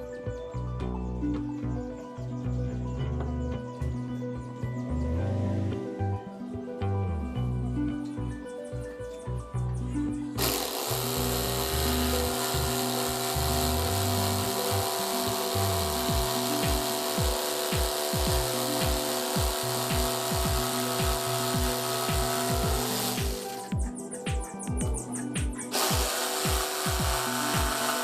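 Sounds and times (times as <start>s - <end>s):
background music with beat: 0.0s - 28.0s
power tool motor working wood: 10.4s - 23.7s, 25.7s - 28.0s.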